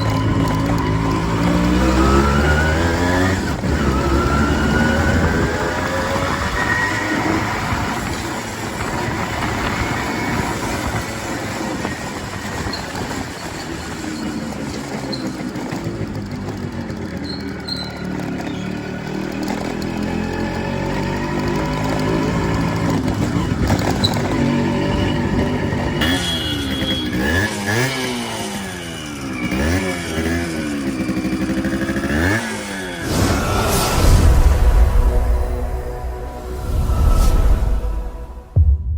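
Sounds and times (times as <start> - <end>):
two-stroke motorcycle engine running: 0.0 - 33.0
rushing whoosh: 33.0 - 38.9.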